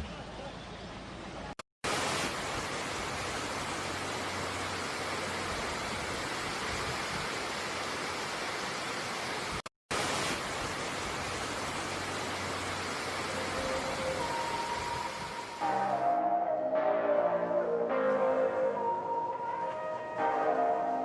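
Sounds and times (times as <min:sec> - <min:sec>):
river rushing: 0:01.9 - 0:16.2.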